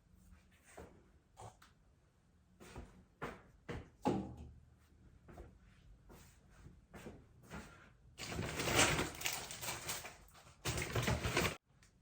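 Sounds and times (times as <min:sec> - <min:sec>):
plastic bags rustling and crinkling: 0:08.2 - 0:11.6.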